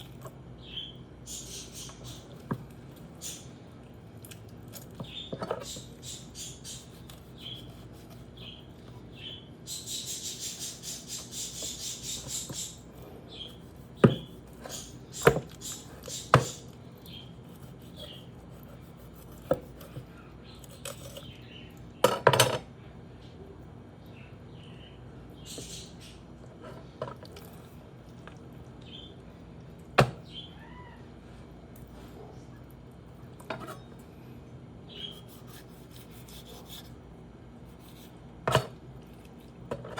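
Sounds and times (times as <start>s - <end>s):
knife scraping cutting strokes: 5.6s - 8.6s, 9.7s - 12.8s, 13.4s - 16.8s, 17.4s - 21.3s, 35.0s - 37.0s, 37.7s - 38.2s.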